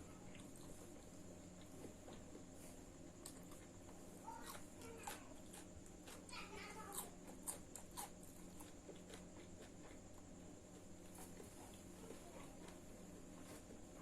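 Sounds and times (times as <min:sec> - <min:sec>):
faint steady hum: 0:00.0 - 0:14.0
chewing clicks and smacks: 0:03.1 - 0:06.3, 0:06.9 - 0:10.4.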